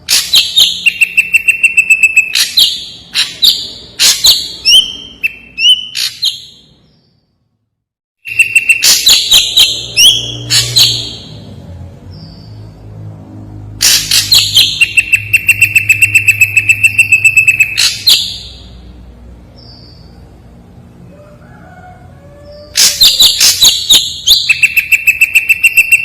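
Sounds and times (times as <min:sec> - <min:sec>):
bird singing harsh notes and whistles: 0:00.0 - 0:07.1, 0:08.2 - 0:12.7, 0:13.8 - 0:18.8, 0:22.7 - 0:26.0.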